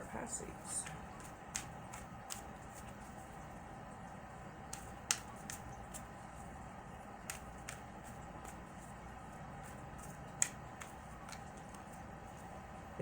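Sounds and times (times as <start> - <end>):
faint room hum: 0.0 - 13.0
cards clicking and snapping: 0.8 - 3.0, 4.6 - 6.2, 7.2 - 8.7, 9.6 - 12.0.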